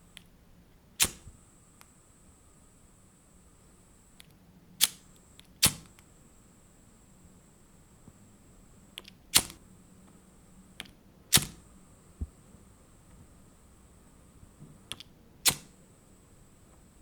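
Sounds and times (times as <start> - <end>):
lighter clicks: 1.0 - 1.9, 4.2 - 6.1, 9.0 - 9.6, 10.8 - 11.6, 14.9 - 15.7.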